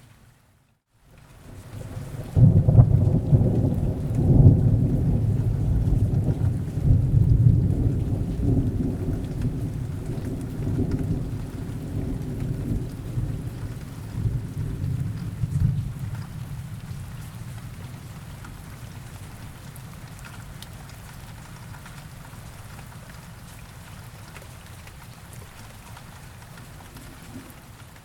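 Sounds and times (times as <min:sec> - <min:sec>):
steady rain: 0:00.0 - 0:28.0
rolling thunder: 0:01.8 - 0:17.6.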